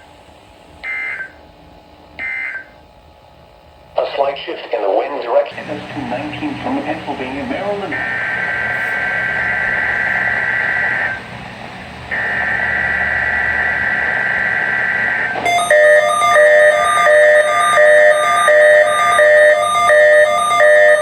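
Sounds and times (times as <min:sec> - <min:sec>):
buzzy two-tone data screech: 0:05.6 - 0:11.2, 0:12.1 - 0:21.0
electronic beeping tune: 0:12.2 - 0:21.0.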